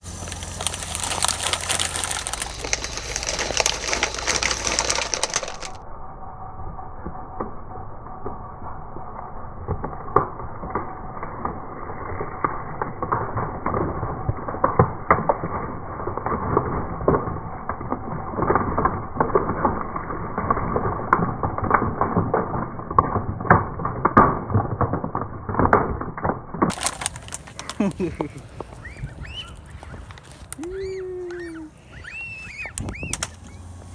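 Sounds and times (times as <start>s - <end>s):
objects crushed under car tyre: 0.0s - 5.8s, 12.5s - 30.6s.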